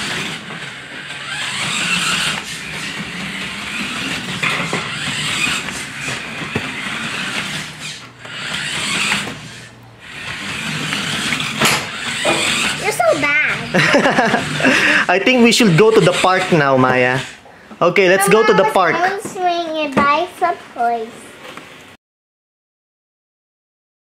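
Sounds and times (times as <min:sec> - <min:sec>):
small electric motor whirring: 0:00.0 - 0:17.4.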